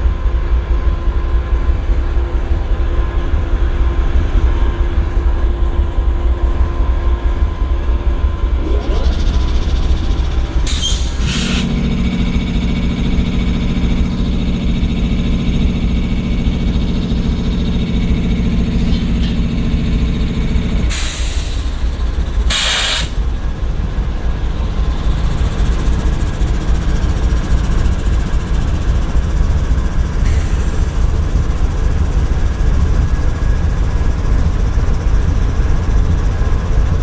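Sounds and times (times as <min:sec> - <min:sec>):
locomotive engine idling: 0:03.9 - 0:37.0
higher hum: 0:08.3 - 0:36.7
air release hisses: 0:09.8 - 0:11.8, 0:20.9 - 0:23.3, 0:30.2 - 0:31.0.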